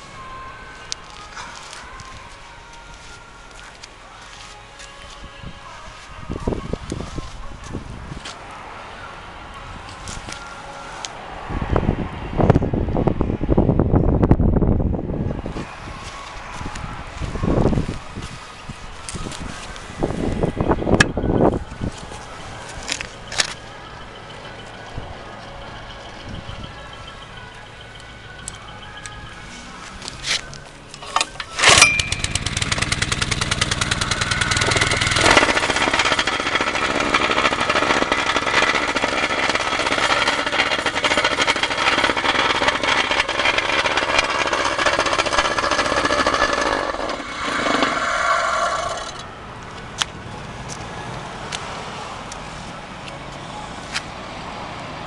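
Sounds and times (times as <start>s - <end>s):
plate compactor engine running: 31.0s - 49.3s.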